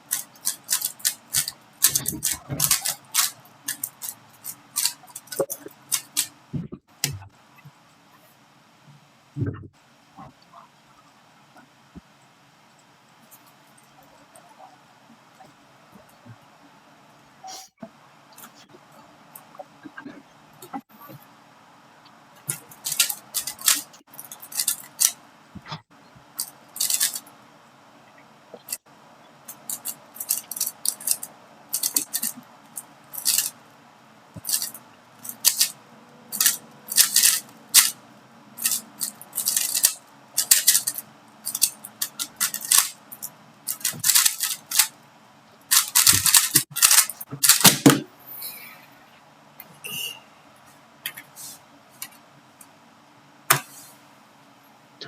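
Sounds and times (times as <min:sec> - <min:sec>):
puzzle cube clicking: 0:00.1 - 0:06.3, 0:22.7 - 0:25.2, 0:26.4 - 0:27.2, 0:29.5 - 0:32.4, 0:33.1 - 0:33.5, 0:34.4 - 0:38.0, 0:38.6 - 0:43.0, 0:43.7 - 0:44.9, 0:45.7 - 0:48.0.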